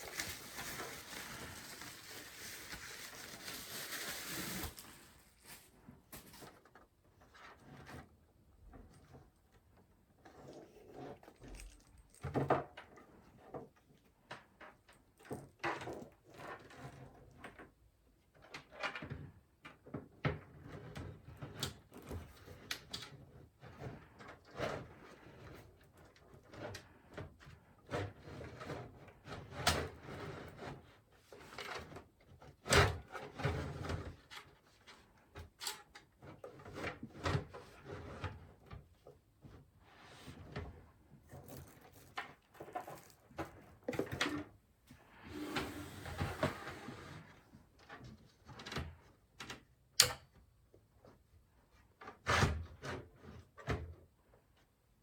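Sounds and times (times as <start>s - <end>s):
scrape or rustle: 0.0s - 8.2s, 39.4s - 44.2s, 44.9s - 47.4s.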